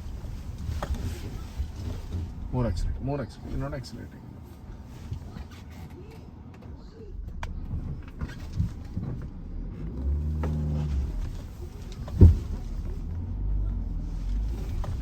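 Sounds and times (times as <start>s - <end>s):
car engine pulling off-road: 7.1s - 15.0s.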